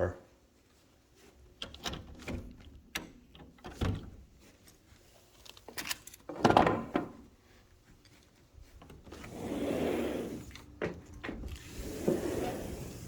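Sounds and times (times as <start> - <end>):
footsteps: 4.1 - 6.3, 7.1 - 9.4
sliding door scraping open: 9.1 - 13.0.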